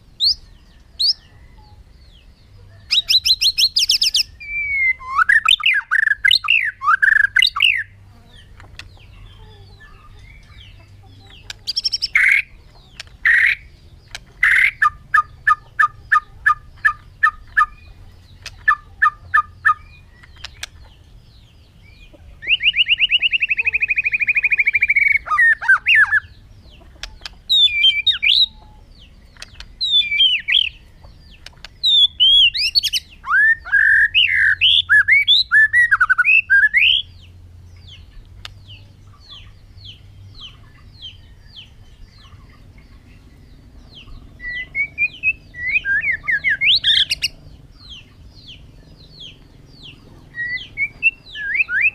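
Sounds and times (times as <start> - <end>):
buzzy bird trill: 0.0 - 21.1, 22.4 - 51.9
bird singing whistled phrases: 2.9 - 7.9, 22.4 - 26.3, 27.5 - 28.7, 31.8 - 37.2, 44.4 - 47.3, 50.3 - 51.9.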